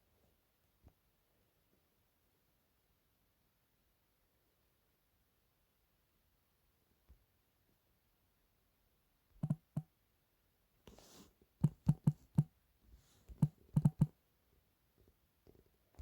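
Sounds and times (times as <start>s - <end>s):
sharp irregular clicks and knocks: 9.4s - 9.9s, 11.6s - 12.5s, 13.3s - 14.1s.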